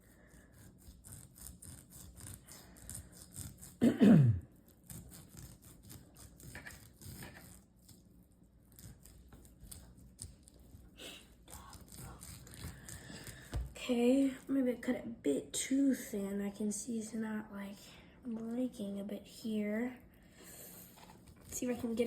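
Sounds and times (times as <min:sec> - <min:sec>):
knife slicing meat: 0:00.0 - 0:03.8, 0:04.6 - 0:13.7.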